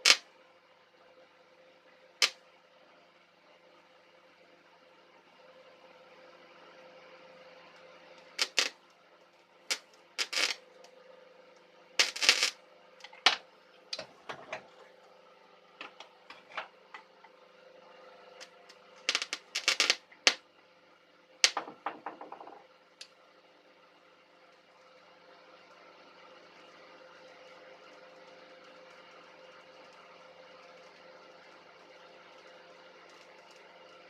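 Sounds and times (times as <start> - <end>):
spot welder crackling zaps: 0.0 - 0.3, 2.2 - 2.4, 8.2 - 8.9, 9.7 - 10.6, 12.0 - 14.0, 18.4 - 20.4, 21.4 - 21.6
steady hum: 9.6 - 22.0.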